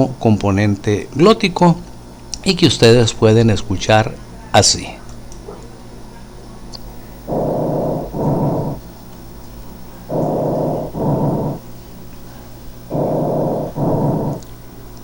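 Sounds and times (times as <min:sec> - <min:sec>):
breathing through a stethoscope: 0:07.3 - 0:08.8, 0:10.1 - 0:11.6, 0:12.9 - 0:14.4.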